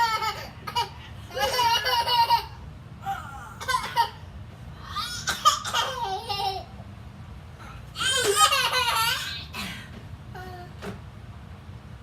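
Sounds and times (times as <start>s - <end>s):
small child laughing: 0.0s - 4.2s, 4.9s - 6.7s, 8.0s - 9.6s.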